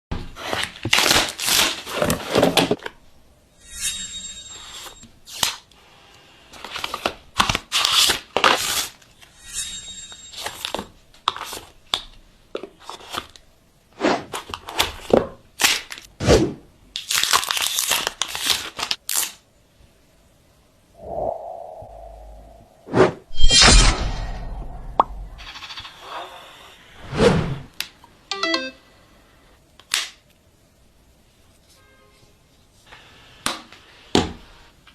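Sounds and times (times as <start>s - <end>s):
plastic wrap tearing and crinkling: 0.4s - 2.8s, 6.6s - 9.0s, 17.0s - 19.4s
box cracking and rustling: 0.6s - 2.8s.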